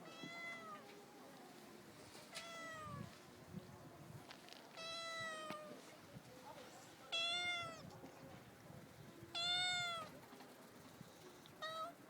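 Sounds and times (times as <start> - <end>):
cat meowing: 9.4 - 10.1.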